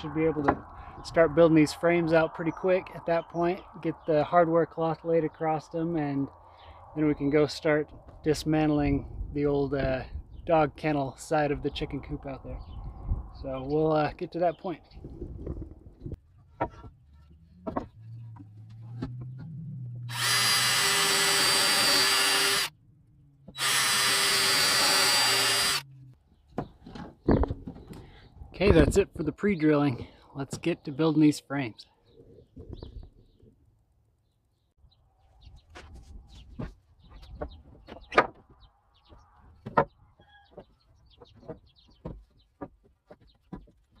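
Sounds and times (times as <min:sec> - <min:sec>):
wooden knocks from lumber: 0:17.6 - 0:19.5, 0:39.6 - 0:43.8
power drill whining: 0:20.1 - 0:22.7, 0:23.5 - 0:25.8.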